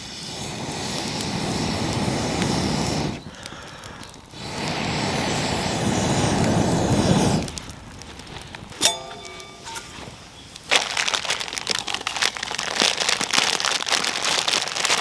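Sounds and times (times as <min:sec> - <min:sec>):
air blown through fire tube: 0:00.0 - 0:07.7.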